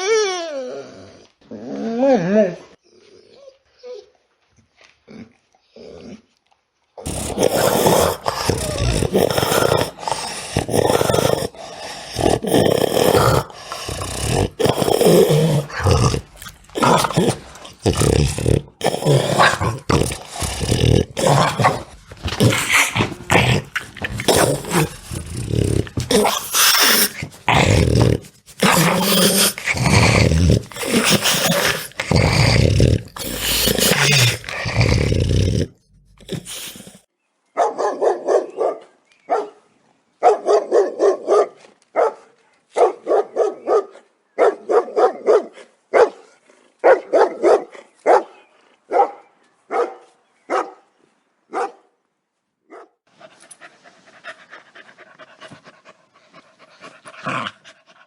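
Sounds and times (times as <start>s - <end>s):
dogs barking: 37.6s - 39.6s, 40.2s - 50.9s, 51.5s - 51.9s, 52.7s - 53.0s.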